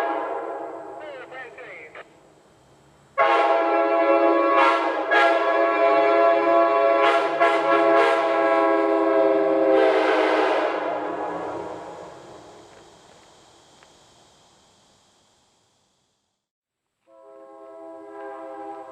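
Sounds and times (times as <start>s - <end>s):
locomotive air horn chord: 0.0s - 1.0s, 3.2s - 12.3s, 17.0s - 18.9s
air hiss from valve: 11.4s - 16.4s.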